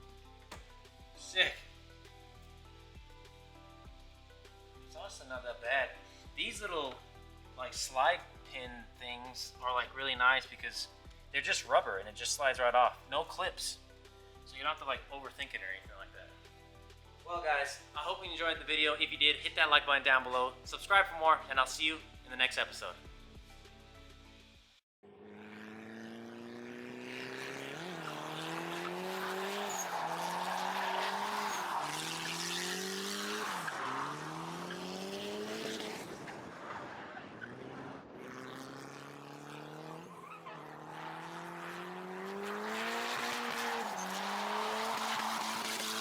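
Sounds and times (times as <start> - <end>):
car engine accelerating: 25.1 - 46.0
tyre and road noise: 25.2 - 46.0.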